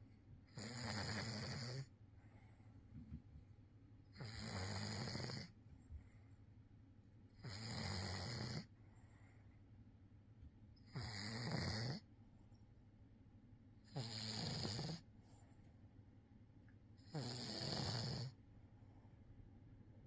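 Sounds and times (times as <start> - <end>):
cat snoring: 0.5 - 1.9, 4.1 - 5.5, 7.4 - 8.7, 10.8 - 12.0, 13.9 - 15.0, 17.0 - 18.4.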